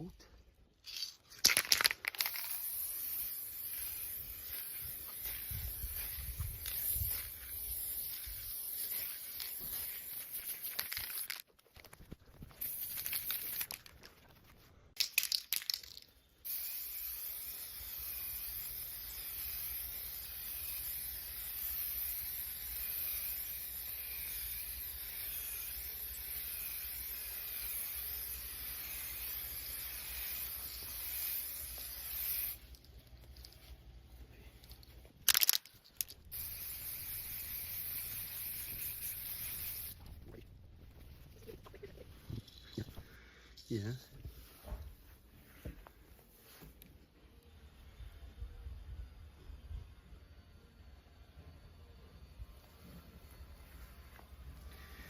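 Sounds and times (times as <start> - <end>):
paint spray gun hissing: 2.2 - 11.2, 16.4 - 32.7, 36.3 - 40.0, 54.6 - 55.0.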